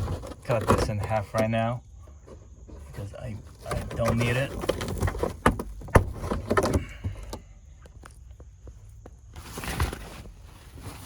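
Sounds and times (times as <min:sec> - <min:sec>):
rustling scrape: 0:00.0 - 0:01.4, 0:09.4 - 0:11.0.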